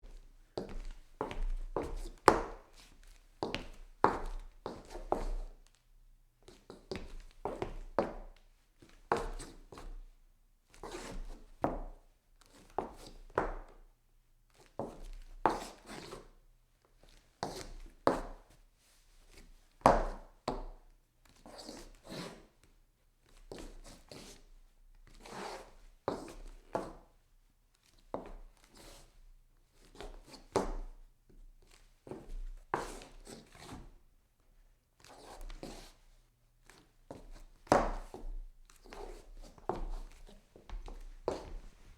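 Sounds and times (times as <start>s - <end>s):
footsteps scuffing on wooden floor: 37.1s - 41.9s.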